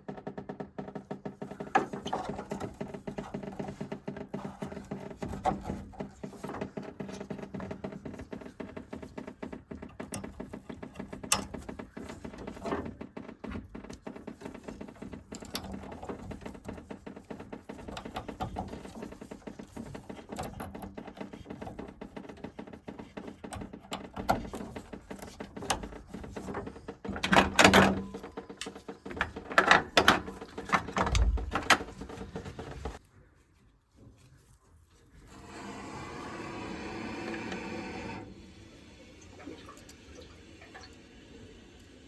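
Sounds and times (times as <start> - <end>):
small clicks taps and rattles: 0.0 - 33.1.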